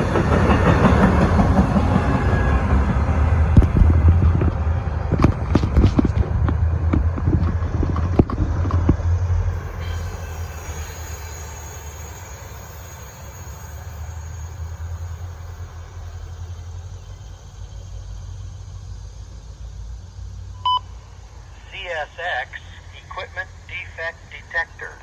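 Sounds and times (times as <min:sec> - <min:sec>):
train wheels clacking over rail joints: 0:00.0 - 0:18.2
low train rumble: 0:00.0 - 0:25.0.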